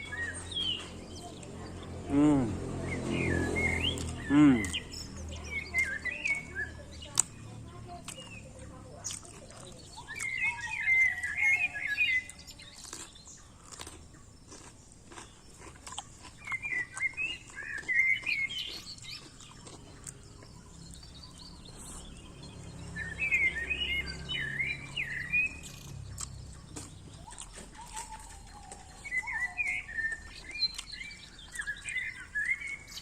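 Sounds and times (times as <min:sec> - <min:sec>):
songbird twittering: 0:00.0 - 0:33.0
bird eating clicks: 0:07.1 - 0:10.4.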